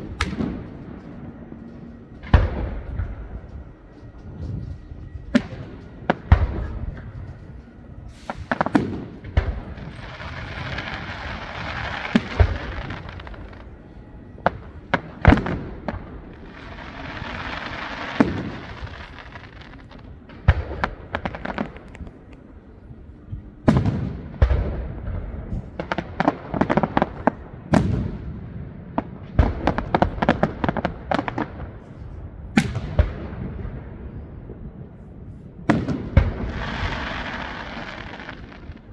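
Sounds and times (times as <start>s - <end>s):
fireworks bangs and booms: 0.0s - 38.9s
fireworks hissing: 6.6s - 15.2s, 16.4s - 22.4s, 36.5s - 38.9s.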